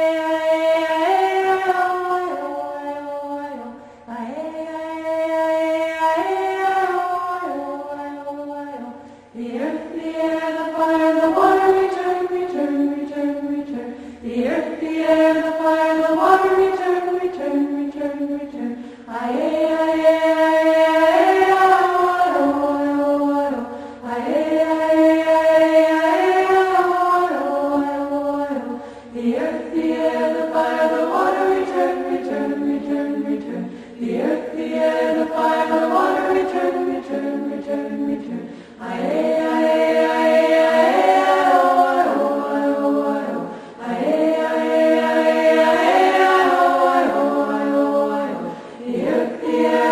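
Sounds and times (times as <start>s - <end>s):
choir singing chant: 0.0s - 49.9s.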